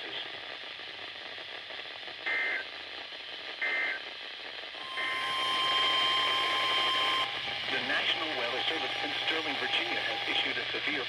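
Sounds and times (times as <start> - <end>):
buzzy data burst squawks: 4.8 - 10.6
weather radio hiss: 4.8 - 11.0.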